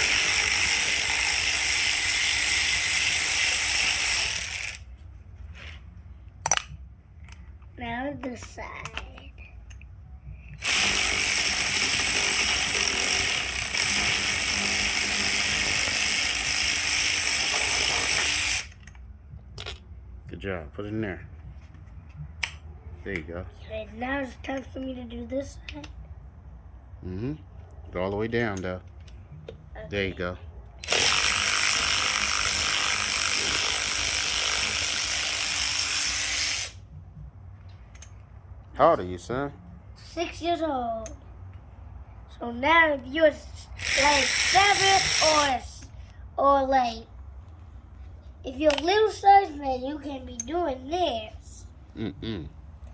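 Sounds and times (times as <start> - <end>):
power tool high-pitched whine: 0.0 - 4.8, 10.6 - 18.7, 30.8 - 36.8, 43.8 - 45.6.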